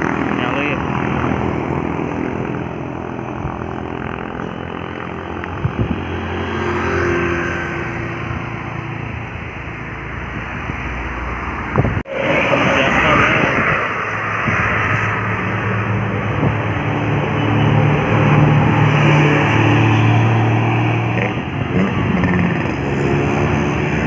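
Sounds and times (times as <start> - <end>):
bus diesel engine under load: 0.0 - 24.0.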